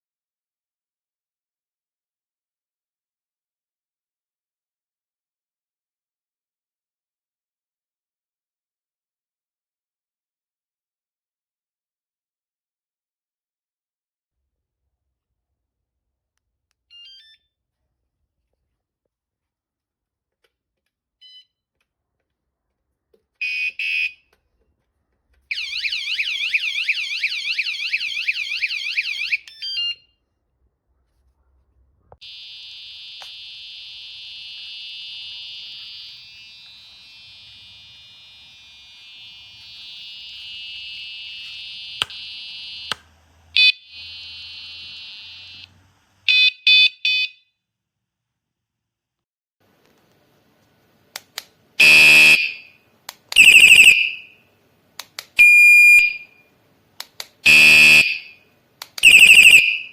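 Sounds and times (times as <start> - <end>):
loud alarm beeps: 23.4 - 24.1, 37.3 - 43.0, 43.6 - 45.6, 46.3 - 47.3, 51.8 - 52.7, 53.4 - 54.3, 55.4 - 56.4, 57.5 - 58.4, 59.0 - 59.9
bike alarm chirps: 23.4 - 24.2, 25.5 - 30.0, 32.2 - 43.0, 43.6 - 45.7, 46.3 - 47.5, 51.8 - 52.7, 53.4 - 54.4, 55.4 - 56.4, 57.5 - 58.4, 59.0 - 59.9
steady multi-tone alarm: 23.4 - 24.2, 25.5 - 29.9, 32.2 - 45.7, 46.3 - 47.4, 51.8 - 52.8, 53.4 - 54.4, 55.4 - 56.4, 57.4 - 58.4, 59.0 - 59.9
warbling alarm siren: 25.5 - 29.9, 32.2 - 47.2, 53.4 - 54.3, 59.0 - 59.9.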